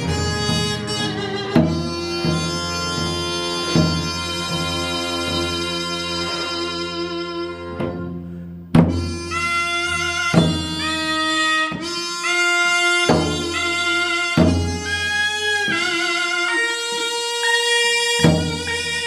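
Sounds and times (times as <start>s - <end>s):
sharp drum strokes: 0.0s - 6.4s, 7.7s - 16.2s
low bowed string tone: 0.0s - 12.0s
reedy wind instruments: 0.0s - 19.0s.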